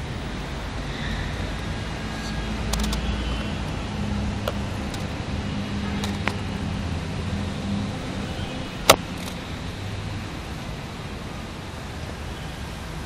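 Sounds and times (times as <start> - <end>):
vehicle engine rumbling: 0.0 - 11.7.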